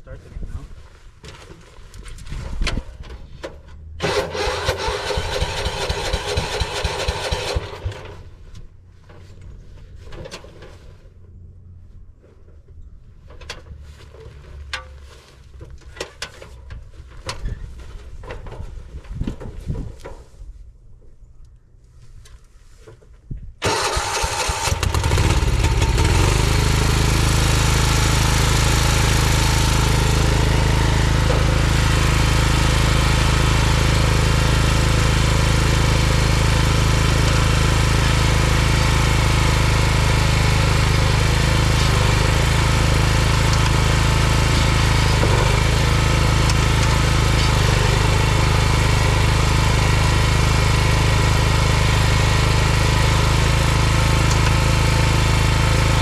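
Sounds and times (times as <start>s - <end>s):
small engine starting and running: 4.0s - 8.4s, 23.6s - 56.0s.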